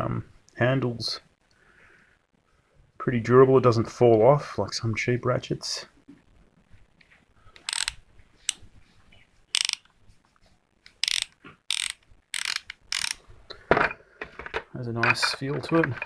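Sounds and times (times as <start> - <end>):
socket ratchet clicking: 7.6 - 8.6, 9.5 - 9.9, 10.9 - 13.2.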